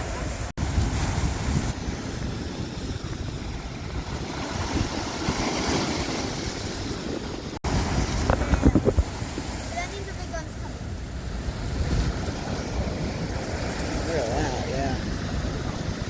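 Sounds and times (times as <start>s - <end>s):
rushing water: 0.0s - 16.0s
wind buffeting microphone: 0.0s - 16.0s.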